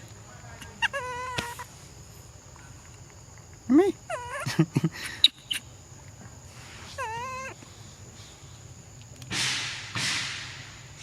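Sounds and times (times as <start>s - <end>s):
young monkey crying: 0.6s - 1.7s, 3.9s - 5.7s, 6.9s - 7.6s.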